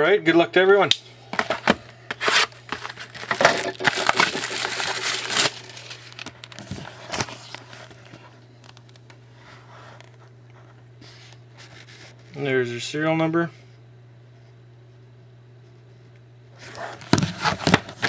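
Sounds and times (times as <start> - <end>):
wrapping crinkling and tearing: 2.2 - 9.1.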